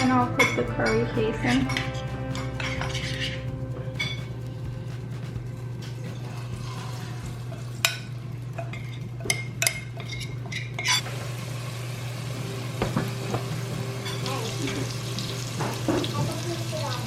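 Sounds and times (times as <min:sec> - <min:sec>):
paste sizzling in hot fat: 0:06.3 - 0:08.0, 0:11.0 - 0:17.0.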